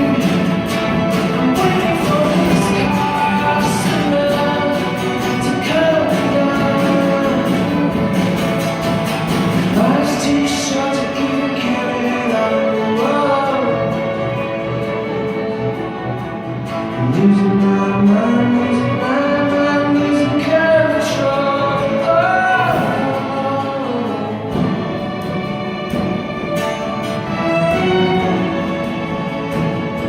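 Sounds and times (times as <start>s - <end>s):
drum and cymbal hits: 0.0s - 12.4s, 22.6s - 30.0s
male singer with rock band: 0.0s - 25.1s
string orchestra: 0.0s - 30.0s.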